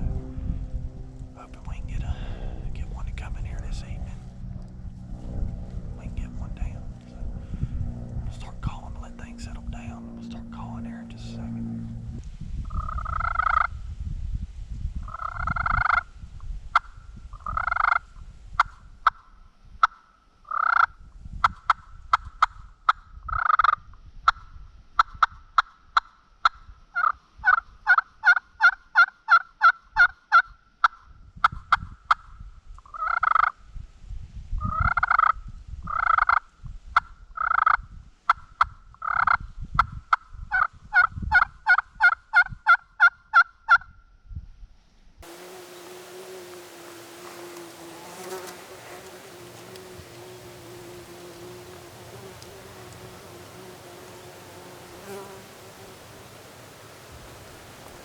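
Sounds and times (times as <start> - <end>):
low rumble: 0.0 - 13.9.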